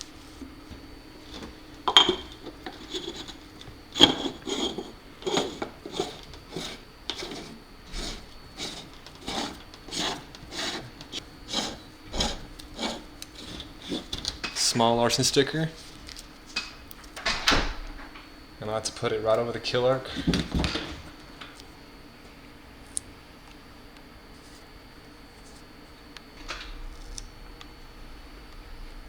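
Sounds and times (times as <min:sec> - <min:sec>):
towel rubbing metal: 0:02.3 - 0:16.0.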